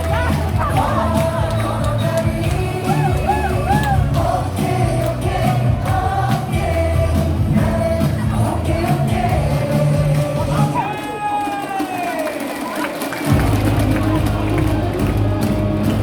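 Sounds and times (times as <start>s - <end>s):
crowd singing along: 0.0s - 10.9s
stadium cheer music over loudspeakers: 0.0s - 16.0s.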